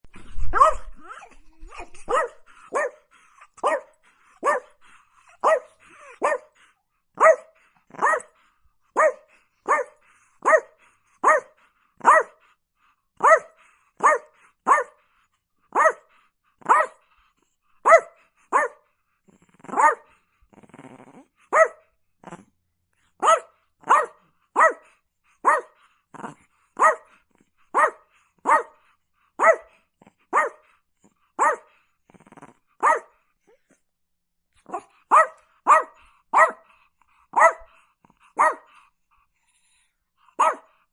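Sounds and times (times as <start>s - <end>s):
dog barking: 0.5s - 0.9s, 2.1s - 6.6s, 7.2s - 8.4s, 9.0s - 12.4s, 13.2s - 15.0s, 15.7s - 17.0s, 17.8s - 18.8s, 19.7s - 20.1s, 21.5s - 21.9s, 23.2s - 25.8s, 26.8s - 28.8s, 29.4s - 30.7s, 31.4s - 31.7s, 32.8s - 33.2s, 34.7s - 36.7s, 37.3s - 38.8s, 40.3s - 40.8s
dog growling: 19.2s - 21.4s, 22.2s - 22.6s, 26.1s - 26.6s, 32.0s - 33.8s.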